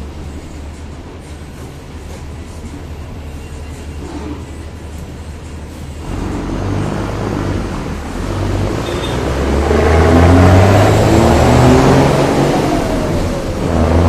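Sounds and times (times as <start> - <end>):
vehicle engine accelerating: 6.0 - 14.0.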